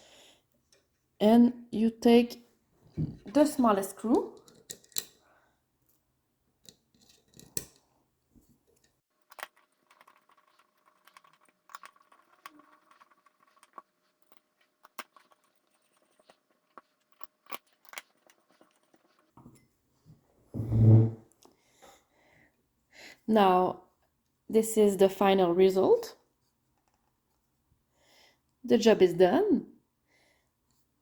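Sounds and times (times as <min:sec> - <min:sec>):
thump: 0:20.6 - 0:21.2.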